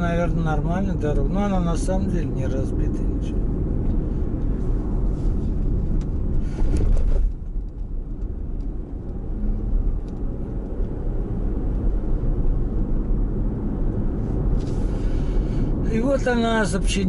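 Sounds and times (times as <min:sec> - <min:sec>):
car engine and tyre rumble: 0:00.0 - 0:17.0.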